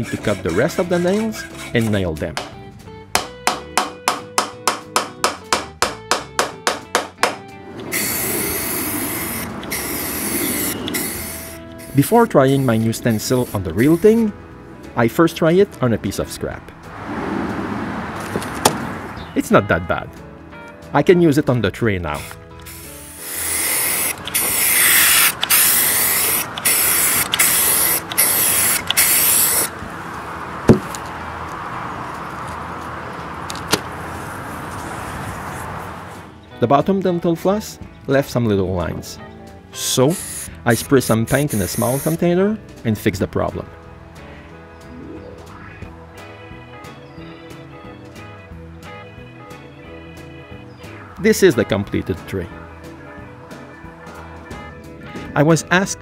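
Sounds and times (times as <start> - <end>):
background music: 0.0 - 31.7, 36.2 - 56.0
hammer striking nails into wood: 2.4 - 7.4
spray paint can hissing: 7.9 - 14.2, 22.7 - 29.7, 40.2 - 42.2.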